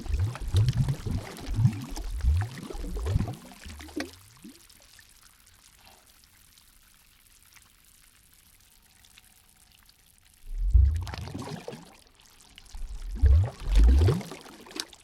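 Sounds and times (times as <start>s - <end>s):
water gurgling and splashing: 0.0s - 4.8s, 10.4s - 15.0s
faint water trickling: 0.0s - 15.0s
small water drips: 0.0s - 15.0s.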